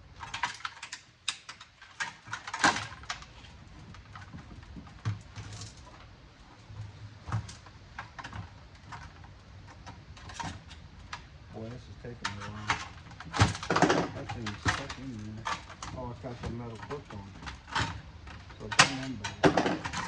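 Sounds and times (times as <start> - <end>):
hand tools prying metal: 12.2 - 20.0.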